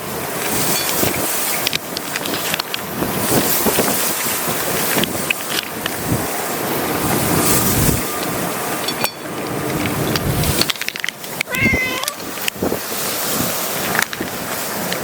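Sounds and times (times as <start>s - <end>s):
strong wind on microphone: 0.0s - 15.0s
cat meowing: 11.5s - 12.3s.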